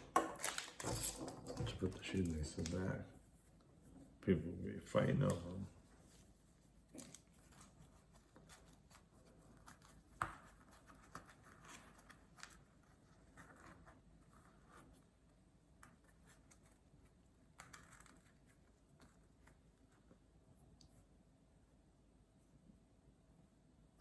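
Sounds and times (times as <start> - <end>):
packaging rustling and clicking: 0.0 - 3.0.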